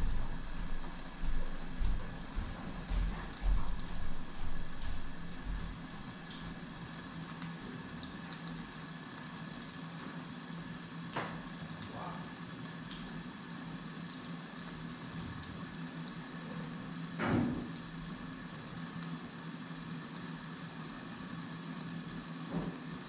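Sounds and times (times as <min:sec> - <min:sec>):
low hum: 0:00.0 - 0:06.5
food sizzling in a pan: 0:00.0 - 0:23.0.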